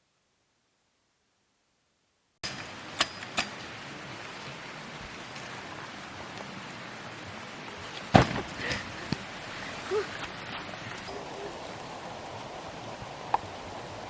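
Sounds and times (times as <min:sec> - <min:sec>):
steady rain falling: 0:02.4 - 0:14.0.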